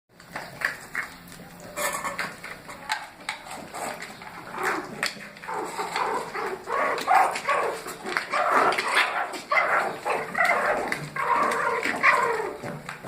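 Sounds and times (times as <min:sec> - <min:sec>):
dog barking and yipping: 0:04.6 - 0:12.7.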